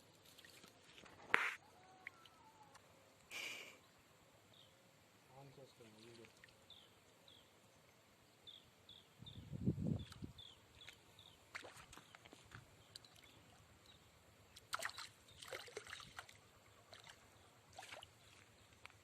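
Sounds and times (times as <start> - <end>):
water splashing and sloshing: 0.0 - 1.6, 5.8 - 6.7, 10.1 - 13.8, 14.5 - 19.0.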